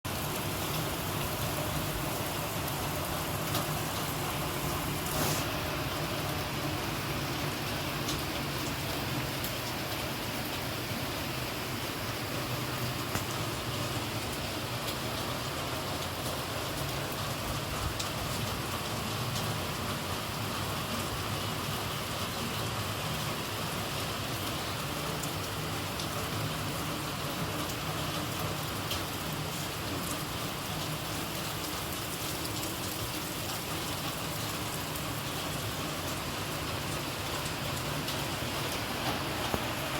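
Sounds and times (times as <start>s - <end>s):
steady rain hiss: 0.1s - 39.9s
raindrop ticks: 8.0s - 8.4s, 12.8s - 15.3s, 17.9s - 20.0s, 36.0s - 39.9s.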